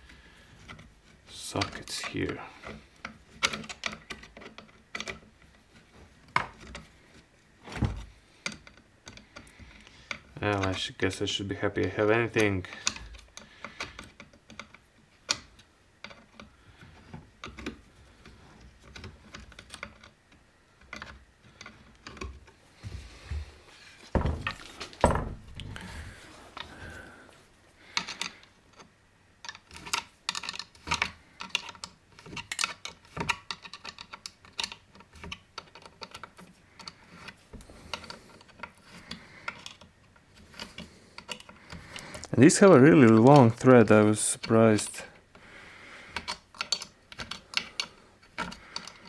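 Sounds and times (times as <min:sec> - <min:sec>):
louder knocks: 0:24.2 - 0:25.9.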